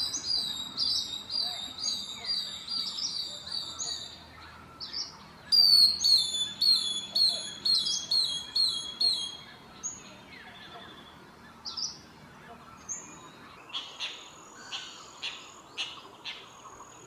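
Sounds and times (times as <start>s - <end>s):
bird singing high repeated notes: 0.0s - 10.0s.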